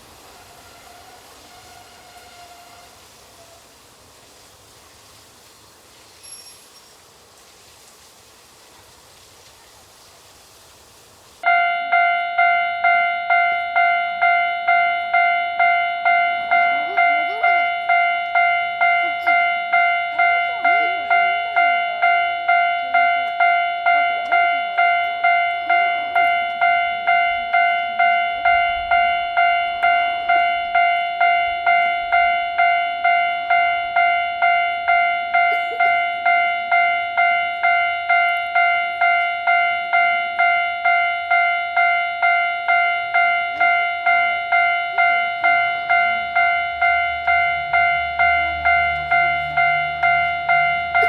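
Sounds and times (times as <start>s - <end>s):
level-crossing warning bell: 0.0s - 4.2s, 11.4s - 51.0s
low engine rumble: 11.4s - 51.0s.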